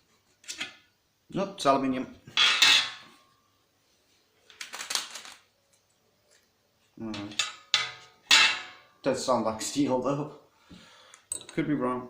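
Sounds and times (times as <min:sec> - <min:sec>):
man talking: 0:01.3 - 0:02.2, 0:07.0 - 0:07.4, 0:09.0 - 0:10.4, 0:11.5 - 0:12.0.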